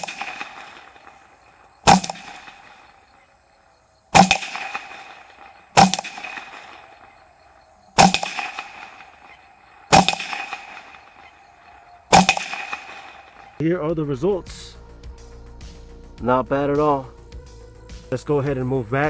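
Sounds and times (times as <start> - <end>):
rifle shots: 0.0 - 3.3, 4.1 - 13.6.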